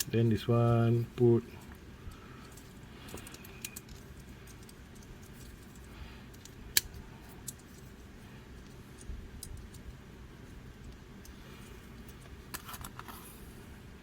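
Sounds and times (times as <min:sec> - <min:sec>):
toy parts clicking and rattling: 0:02.4 - 0:10.0.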